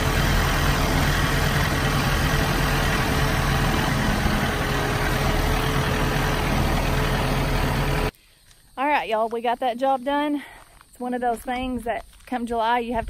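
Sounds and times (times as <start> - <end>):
tractor engine running: 0.0 - 8.1.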